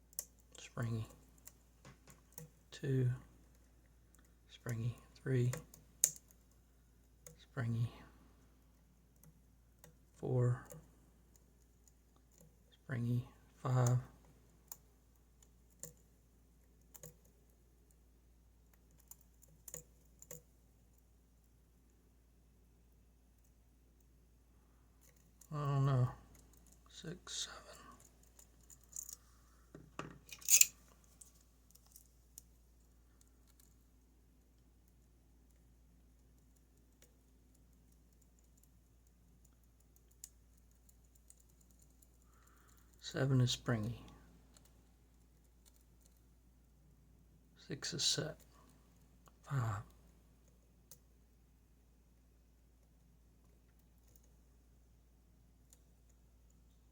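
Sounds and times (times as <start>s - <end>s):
lock pick clicking: 30.2s - 30.7s.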